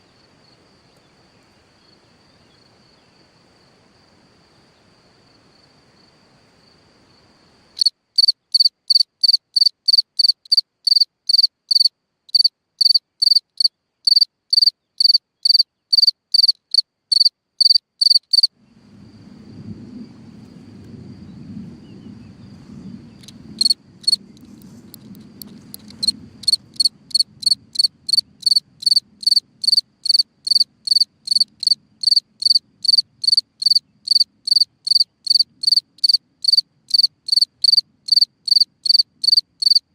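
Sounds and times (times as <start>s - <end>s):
cricket chirping: 0.0s - 39.9s
low rumble: 18.6s - 29.2s.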